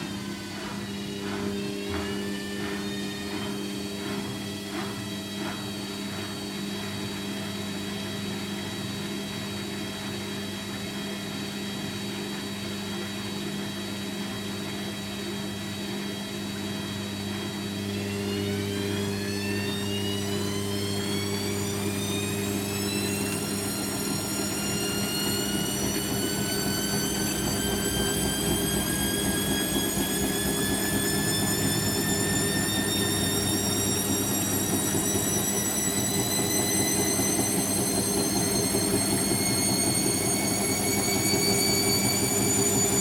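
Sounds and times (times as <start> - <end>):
washing machine drum spinning: 0.0 - 8.5, 15.7 - 43.0.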